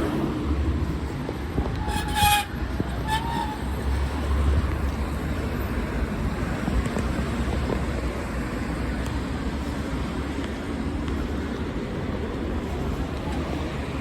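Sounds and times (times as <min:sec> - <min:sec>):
road traffic: 0:00.0 - 0:14.0.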